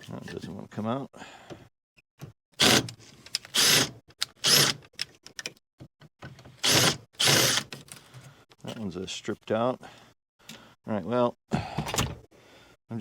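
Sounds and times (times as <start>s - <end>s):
power drill clattering: 2.6s - 4.8s, 6.6s - 7.8s.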